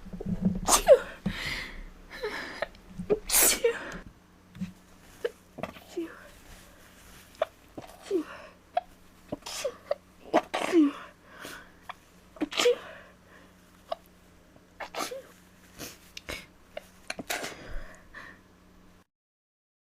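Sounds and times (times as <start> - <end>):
woman sneezing: 0.7 - 1.2, 3.1 - 4.0, 7.9 - 11.1, 12.4 - 13.0, 14.8 - 15.3
sniffs and breaths: 15.2 - 16.5, 17.2 - 18.4.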